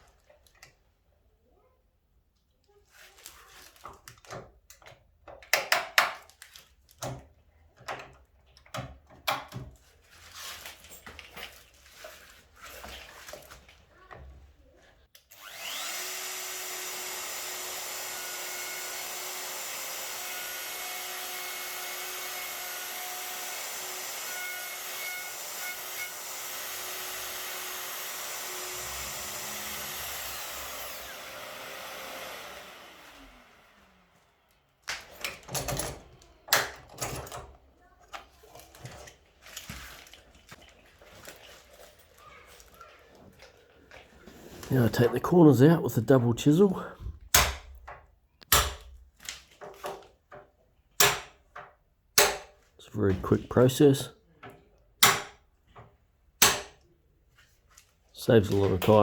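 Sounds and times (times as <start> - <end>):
knocks and clicks of clamps: 4.2 - 6.3, 7.0 - 9.8, 34.8 - 37.6, 47.2 - 52.6, 54.4 - 56.8
plunge router running: 15.4 - 34.2
dust extraction: 15.4 - 34.5.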